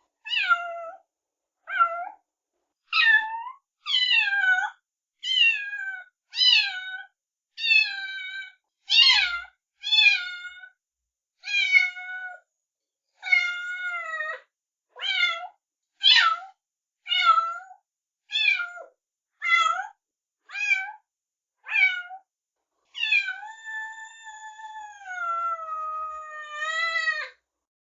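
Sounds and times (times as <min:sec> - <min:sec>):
kitten meowing: 0:03.0 - 0:07.0, 0:18.3 - 0:19.9, 0:20.5 - 0:21.0, 0:21.7 - 0:22.2, 0:23.0 - 0:27.4.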